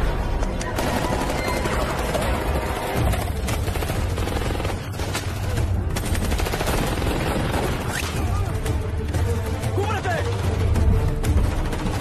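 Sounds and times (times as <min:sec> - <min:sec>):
rapid gunfire: 0:00.8 - 0:08.2, 0:10.3 - 0:12.0.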